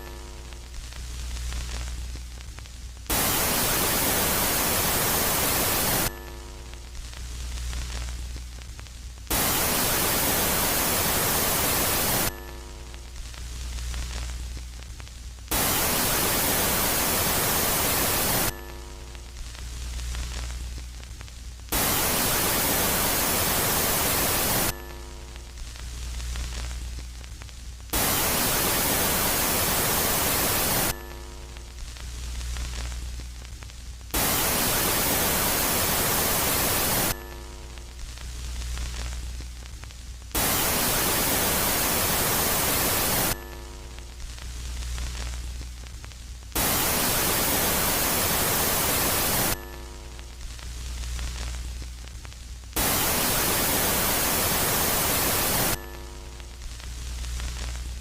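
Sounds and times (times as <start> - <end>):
harsh static: 0.0 - 58.0
low hum with steady tones: 0.0 - 58.0
hiss: 3.1 - 6.1, 21.7 - 24.7, 27.9 - 30.9, 34.2 - 37.2, 40.4 - 43.4, 46.6 - 49.6, 52.8 - 55.8.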